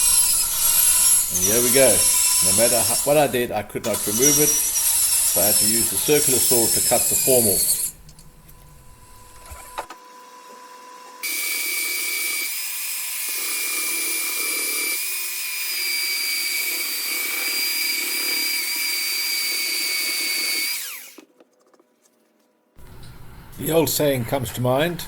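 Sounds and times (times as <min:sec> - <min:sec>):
circular saw whining: 0:00.0 - 0:10.0, 0:11.2 - 0:21.2.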